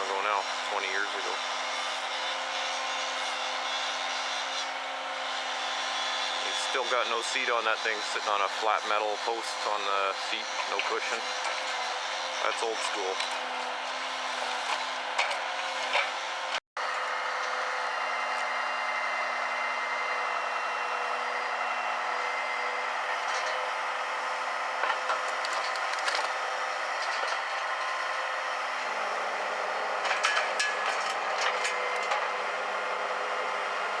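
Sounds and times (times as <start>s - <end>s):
diesel truck engine running: 13.0s - 34.0s
logs knocking and scraping: 24.8s - 26.4s.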